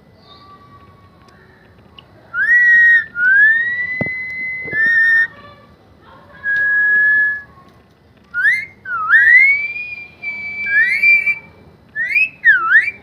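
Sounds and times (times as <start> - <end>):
parrot whistling: 2.4 - 5.4, 8.4 - 13.0.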